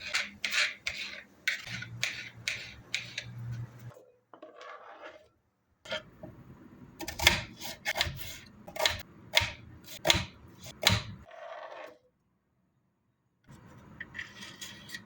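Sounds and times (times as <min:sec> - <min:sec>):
soft scraping: 0:00.5 - 0:05.3.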